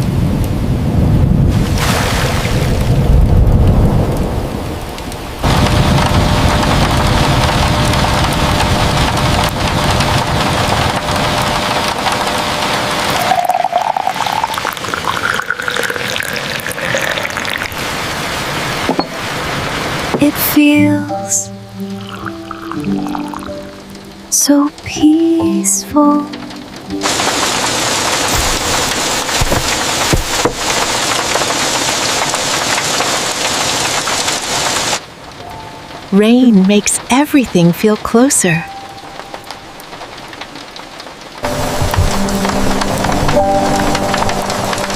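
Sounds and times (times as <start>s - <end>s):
rain hissing: 0.0s - 44.9s
tea pouring into a cup: 13.1s - 17.8s, 22.0s - 23.6s
dull knocks: 28.3s - 30.8s.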